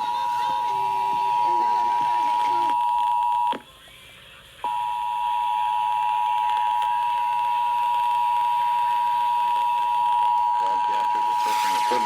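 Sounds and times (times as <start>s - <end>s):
steady alert tone: 11.2s - 12.0s.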